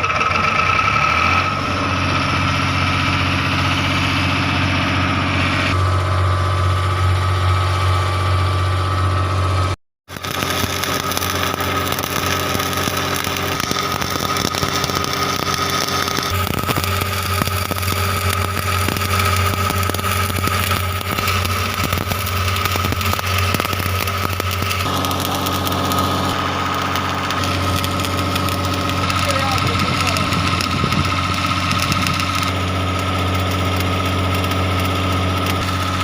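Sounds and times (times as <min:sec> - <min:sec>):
engine idling: 0:00.0 - 0:36.0
dense fine crackle: 0:10.1 - 0:36.0.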